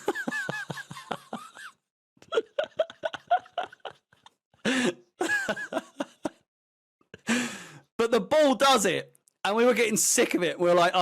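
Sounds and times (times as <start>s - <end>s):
man laughing: 0.0s - 6.4s.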